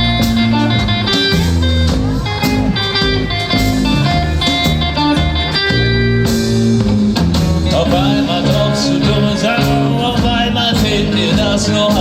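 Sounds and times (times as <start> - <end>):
bass line: 0.0 - 12.0
electric guitar solo: 0.0 - 12.0
steady drum beat: 0.0 - 12.0.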